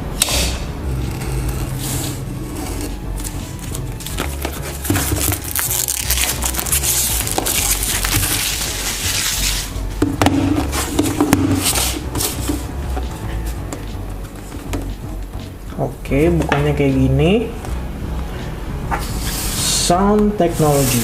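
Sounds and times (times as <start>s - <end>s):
background music: 0.0s - 21.0s
knife cutting tape and cardboard: 0.2s - 12.7s, 20.6s - 21.0s.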